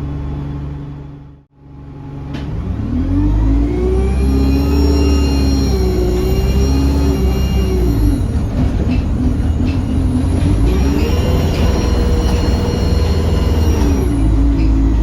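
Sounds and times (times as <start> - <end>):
diesel bus engine: 0.0 - 15.0
turbocharger whistle: 3.4 - 8.2.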